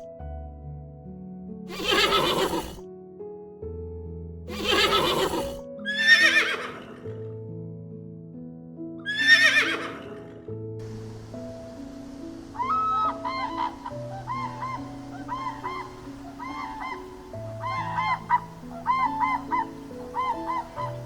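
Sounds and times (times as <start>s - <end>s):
background music of held notes: 0.0s - 21.0s
horse whinnying: 1.7s - 2.8s, 4.5s - 7.0s, 9.1s - 10.2s, 12.6s - 21.0s.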